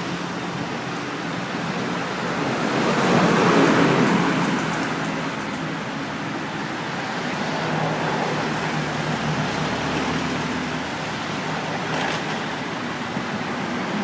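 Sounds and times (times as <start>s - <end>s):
vehicle engine and road noise: 0.0s - 14.0s.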